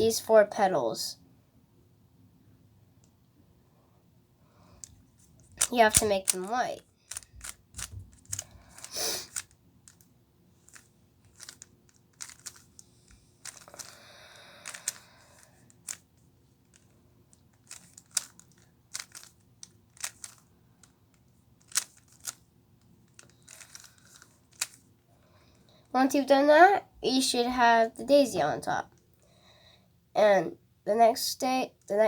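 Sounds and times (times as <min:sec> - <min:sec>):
puzzle cube clicking: 0:04.8 - 0:10.0, 0:10.6 - 0:14.0, 0:14.6 - 0:16.0, 0:16.7 - 0:20.9, 0:21.6 - 0:22.4, 0:23.1 - 0:24.8.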